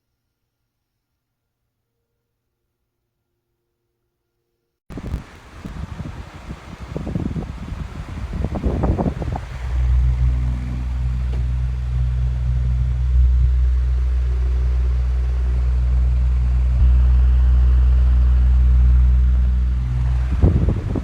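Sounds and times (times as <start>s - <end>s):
electric fan motor hum: 4.9s - 21.0s.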